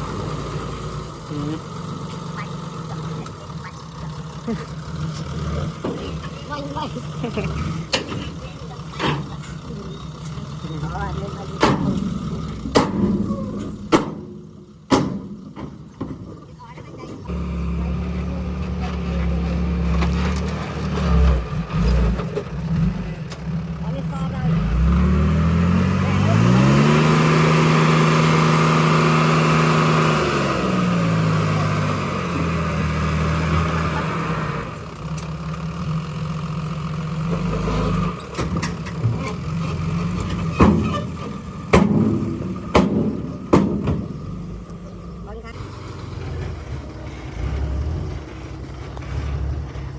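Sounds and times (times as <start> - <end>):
bulldozer diesel engine rumbling: 0.0 - 49.9
sharp knocks: 12.7 - 13.2, 13.9 - 16.2, 41.7 - 44.1.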